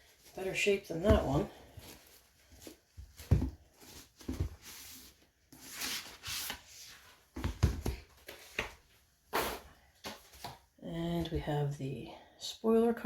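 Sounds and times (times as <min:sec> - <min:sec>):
paper rustling and sliding: 0:03.8 - 0:07.4.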